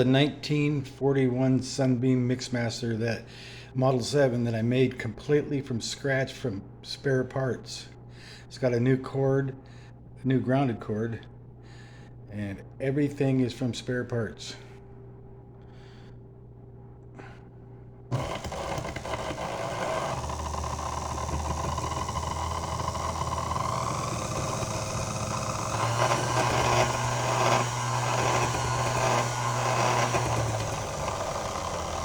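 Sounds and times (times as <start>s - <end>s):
stand mixer motor whining: 18.1s - 32.0s.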